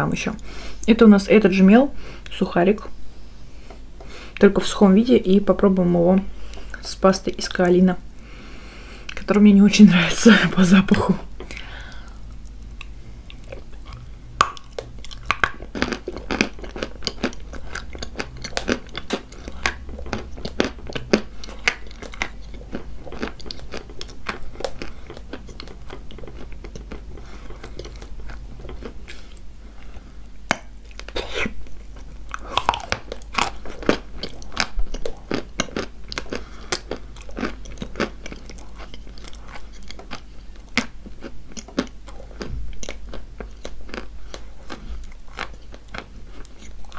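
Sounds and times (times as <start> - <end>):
crunching and chewing chalk: 11.4 - 46.9.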